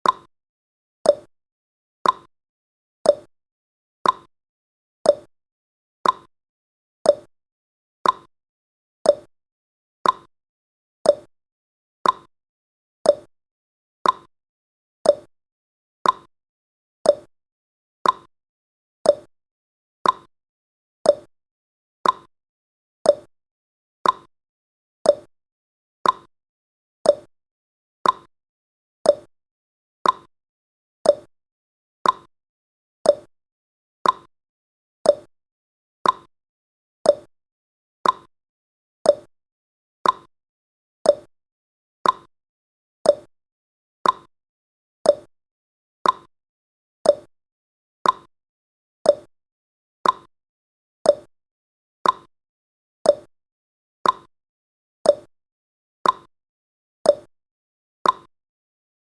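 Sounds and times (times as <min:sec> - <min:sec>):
clock ticking: 0:34.0 - 0:34.3, 0:38.0 - 0:38.3.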